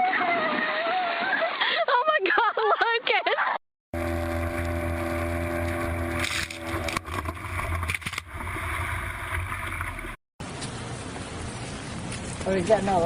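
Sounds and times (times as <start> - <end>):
boat engine humming: 3.9 - 12.1.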